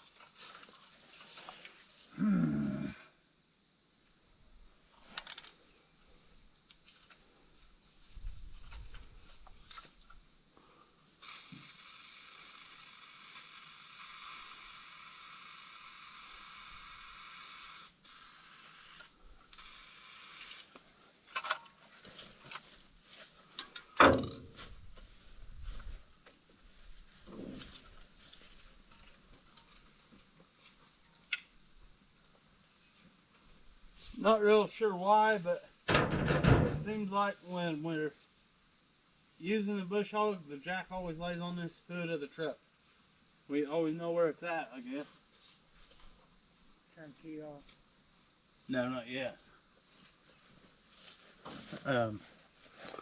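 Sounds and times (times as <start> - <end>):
aerosol spray hissing: 11.2 - 20.7.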